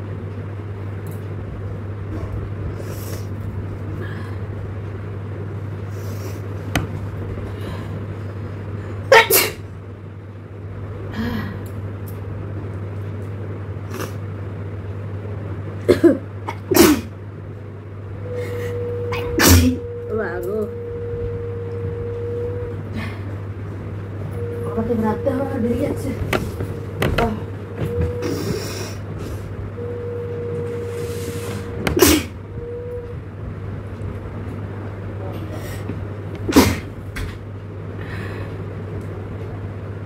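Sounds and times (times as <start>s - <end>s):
steady low hum: 0.0s - 40.0s
person sneezing: 9.1s - 9.6s, 15.9s - 17.1s, 19.1s - 19.8s, 31.9s - 32.4s, 36.5s - 36.9s.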